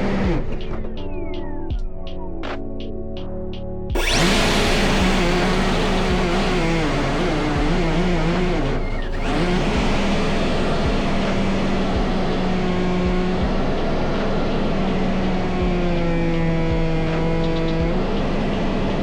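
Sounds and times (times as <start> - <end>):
ducted fan whining: 4.0 - 18.7.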